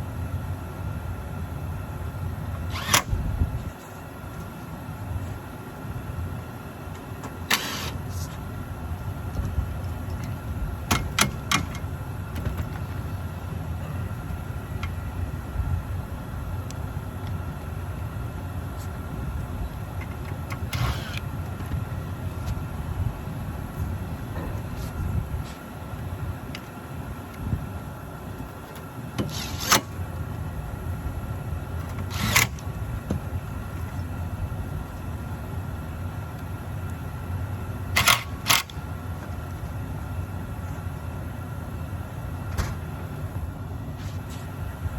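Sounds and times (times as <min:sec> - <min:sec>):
rooftop unit humming: 0:00.0 - 0:44.9
sharp metallic clicks: 0:37.9 - 0:38.8.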